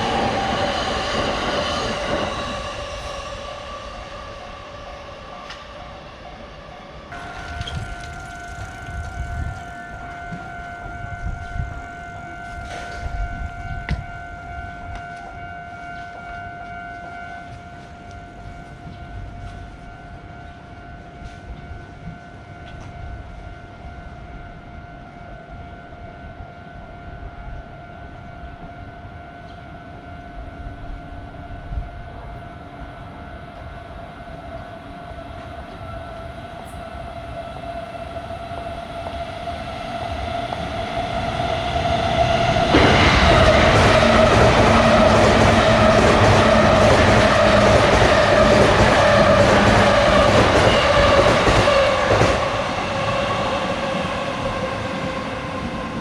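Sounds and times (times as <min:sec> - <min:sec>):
train rumbling past: 0:00.0 - 0:16.2, 0:33.4 - 0:56.0
railroad crossing alarm: 0:00.0 - 0:56.0.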